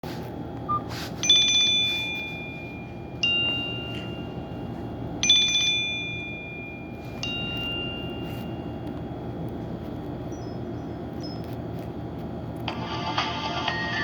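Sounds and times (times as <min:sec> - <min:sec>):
bell-like chime ringtone: 0:01.2 - 0:08.8.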